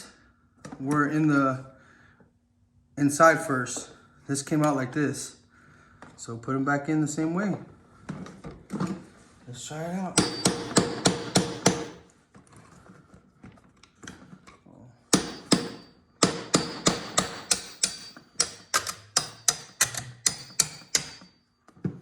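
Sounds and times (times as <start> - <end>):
hammer tapping on metal: 10.2 - 12.0, 15.1 - 21.3.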